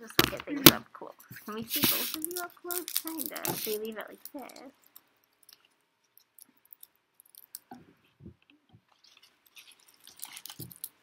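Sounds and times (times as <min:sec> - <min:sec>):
dry leaves and paper crackling: 0:01.6 - 0:04.7, 0:09.1 - 0:10.9.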